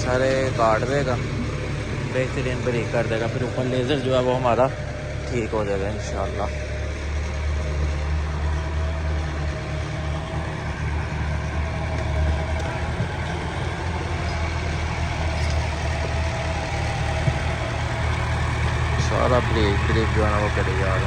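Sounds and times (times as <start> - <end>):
rotary tiller in stony soil: 0.0 - 21.0
tractor engine drone: 0.0 - 21.0.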